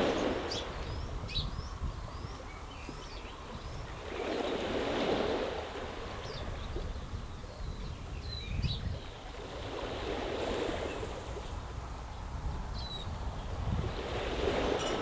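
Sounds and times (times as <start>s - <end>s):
waves washing over stony beach: 0.0s - 0.9s, 4.0s - 6.6s, 9.0s - 12.0s, 13.5s - 15.0s.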